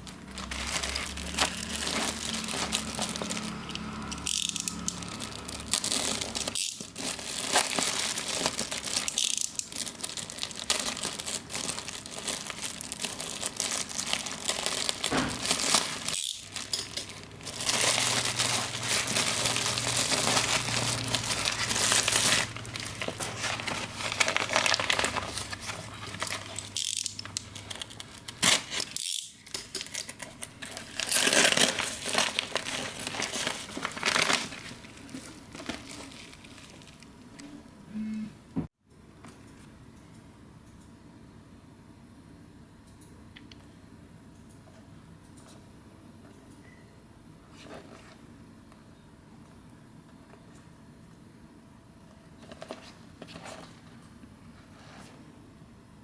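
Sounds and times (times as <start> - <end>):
packaging crinkling: 0.0 - 37.1.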